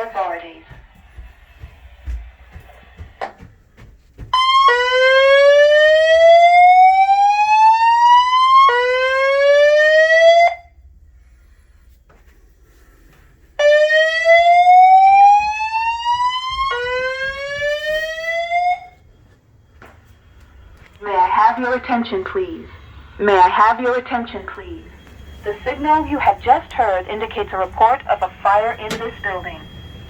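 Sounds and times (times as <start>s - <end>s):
rising whoop alarm tone: 4.4s - 10.6s, 13.6s - 19.0s.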